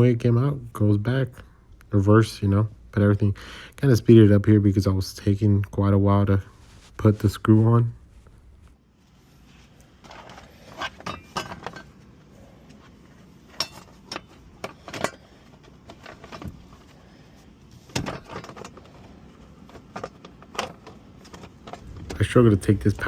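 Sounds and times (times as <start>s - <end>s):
clinks and knocks of tools: 10.1s - 12.0s, 13.5s - 16.6s.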